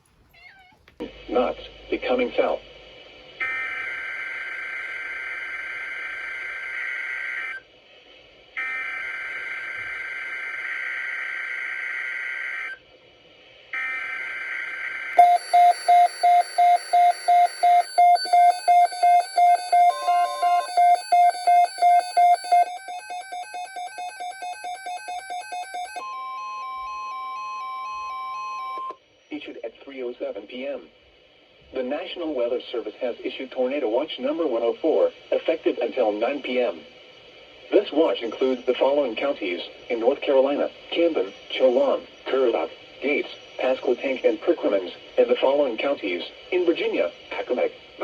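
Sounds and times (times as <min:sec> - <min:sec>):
alarm beeping: 0:15.1 - 0:29.0
raspy buzzing data bursts: 0:15.2 - 0:26.0
steady attention tone: 0:15.2 - 0:29.8.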